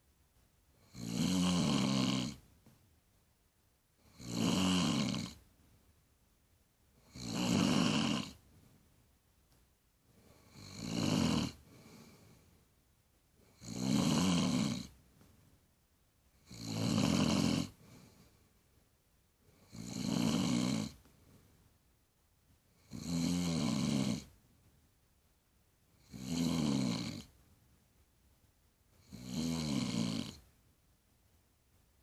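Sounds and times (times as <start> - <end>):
woman snoring: 0.8 - 2.4, 4.0 - 5.4, 7.0 - 8.4, 10.4 - 11.6, 13.5 - 14.9, 16.4 - 17.8, 19.6 - 21.0, 22.8 - 24.3, 26.0 - 27.3, 29.0 - 30.4.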